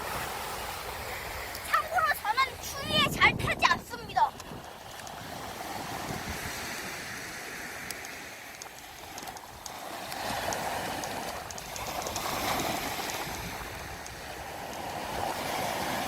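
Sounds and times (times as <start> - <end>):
ocean surf washing ashore: 0.0 - 16.0
faint clicks: 7.8 - 12.3, 13.2 - 14.9.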